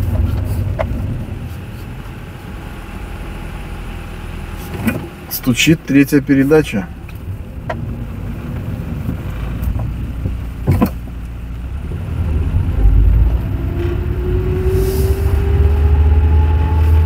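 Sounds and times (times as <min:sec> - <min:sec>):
car drivetrain rumble and whine: 0:00.0 - 0:17.0
gearbox knock: 0:09.8 - 0:11.0.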